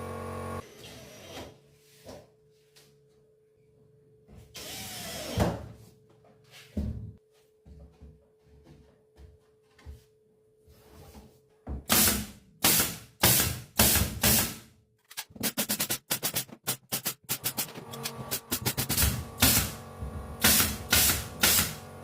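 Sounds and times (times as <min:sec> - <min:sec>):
nail gun firing: 0:11.9 - 0:19.8, 0:20.4 - 0:21.8.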